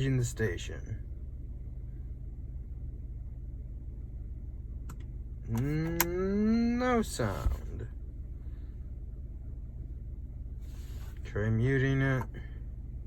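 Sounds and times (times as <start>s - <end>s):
man's drawn-out voice: 5.5s - 7.9s, 11.2s - 12.5s.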